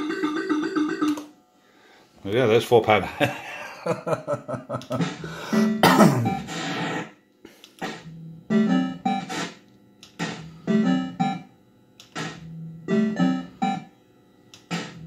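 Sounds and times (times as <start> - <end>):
fruit machine beeping tones: 8.5 - 9.3, 10.5 - 11.5, 12.4 - 13.9.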